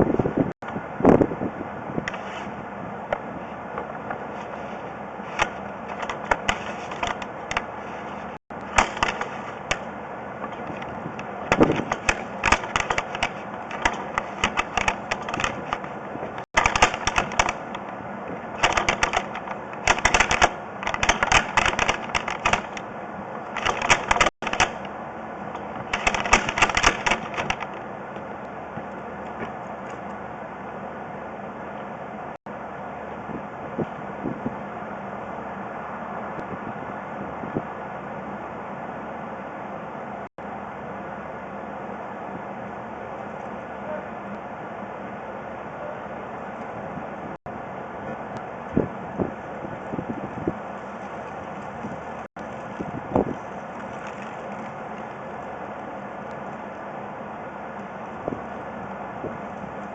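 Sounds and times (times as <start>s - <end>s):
cable clicking and rattling in pipe: 5.3s - 7.8s, 8.6s - 30.2s, 51.0s - 56.8s.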